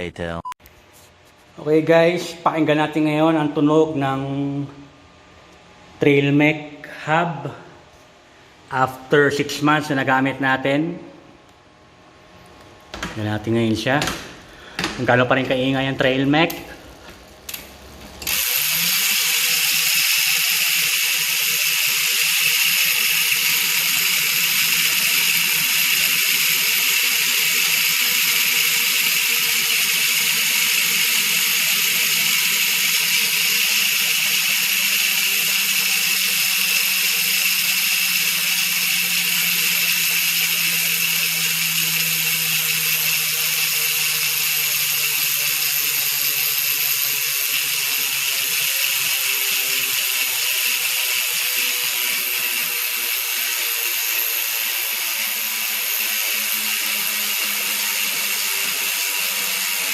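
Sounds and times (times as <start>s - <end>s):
bicycle hub ratchet buzzing: 15.6s - 59.9s.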